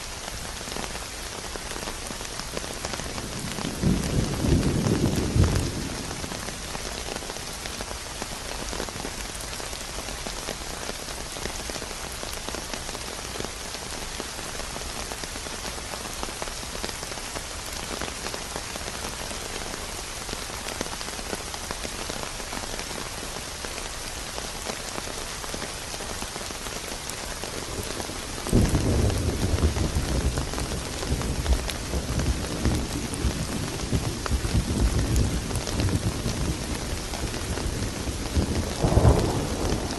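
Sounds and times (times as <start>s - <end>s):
rain hissing on a surface: 0.0s - 39.9s
thunder rumbling: 3.3s - 6.5s, 27.6s - 39.9s.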